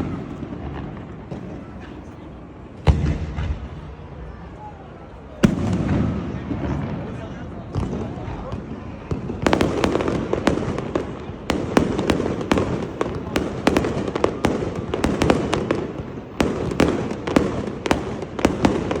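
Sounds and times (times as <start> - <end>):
rumble of fireworks bursts: 0.0 - 19.0
fireworks cracking: 5.4 - 19.0.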